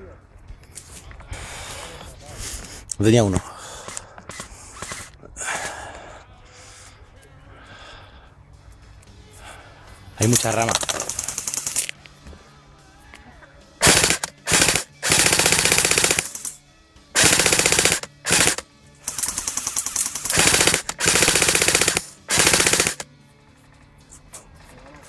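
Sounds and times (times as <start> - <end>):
airsoft rifle rapid bursts: 4.3 - 5.1, 10.6 - 11.9, 13.8 - 16.6, 17.2 - 23.0.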